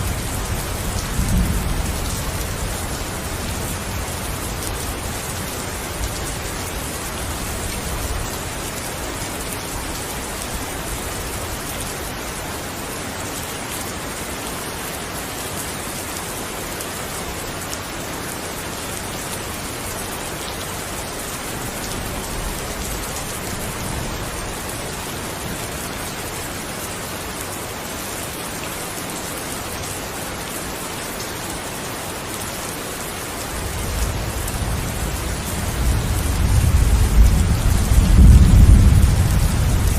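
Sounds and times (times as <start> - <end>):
steady rain pouring: 0.0 - 39.9
distant thunder rumbling: 33.7 - 39.9.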